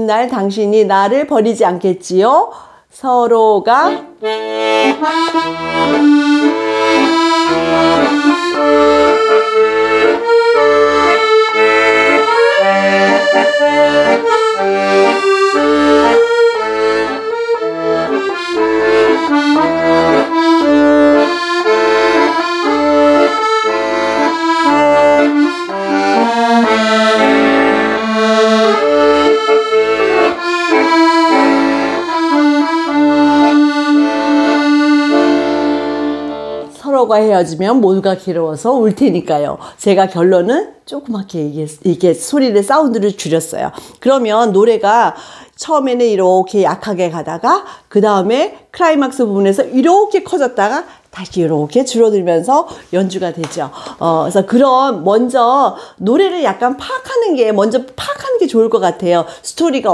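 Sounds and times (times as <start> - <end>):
accordion playing: 3.6 - 37.3.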